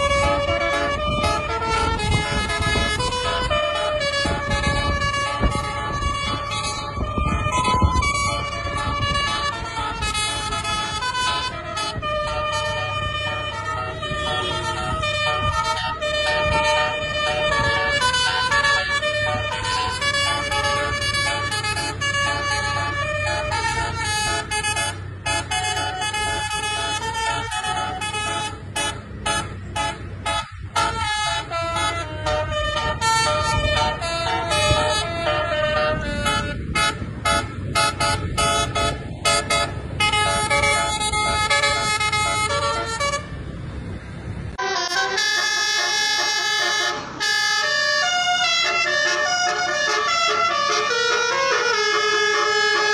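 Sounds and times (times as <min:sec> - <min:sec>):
musical air horn playing tunes: 0:00.0 - 0:43.4, 0:44.6 - 0:52.9
low engine rumble: 0:00.0 - 0:52.9.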